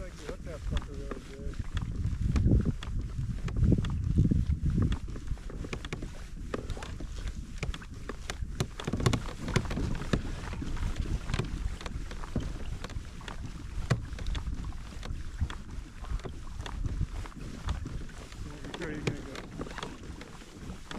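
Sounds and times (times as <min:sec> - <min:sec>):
wind buffeting microphone: 0:00.0 - 0:20.9
light knocks and clicks: 0:04.8 - 0:15.6.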